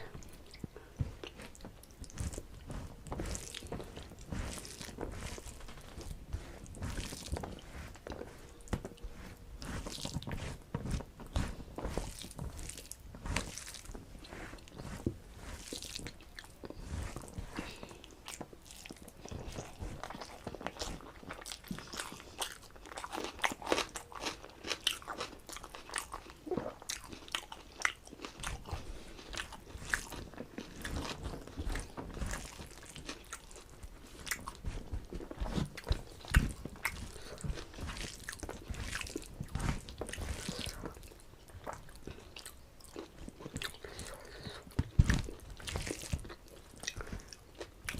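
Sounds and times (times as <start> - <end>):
person chewing crunchy food: 0.0 - 47.9.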